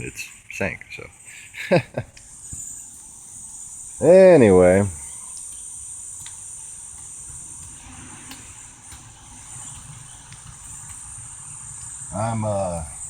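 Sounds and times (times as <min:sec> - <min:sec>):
insects droning: 0:00.0 - 0:13.0.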